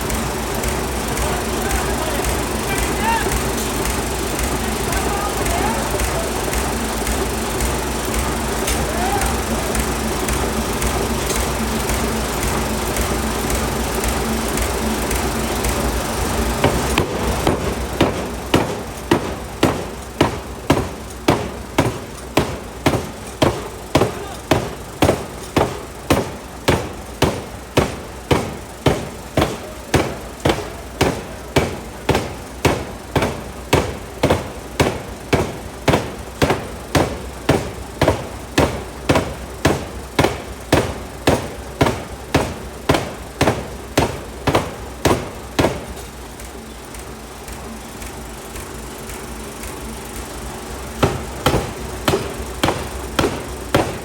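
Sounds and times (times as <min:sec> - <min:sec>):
forging hammer striking metal: 0:16.5 - 0:46.2, 0:51.0 - 0:54.0.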